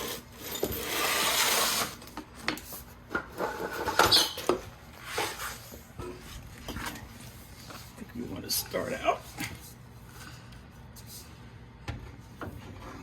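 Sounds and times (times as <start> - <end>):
squeaky scrape: 3.4 - 4.5.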